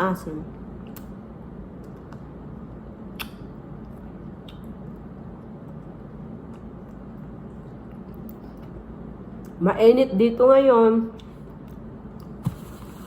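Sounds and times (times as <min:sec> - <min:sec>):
low room hum: 0:00.0 - 0:13.0
wet chewing and mouth clicks: 0:03.1 - 0:08.8.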